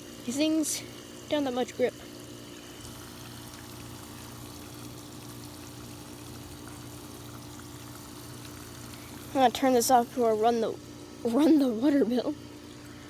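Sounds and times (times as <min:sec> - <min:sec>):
air conditioner humming: 0:00.0 - 0:13.0
water spraying and splashing: 0:02.6 - 0:10.7.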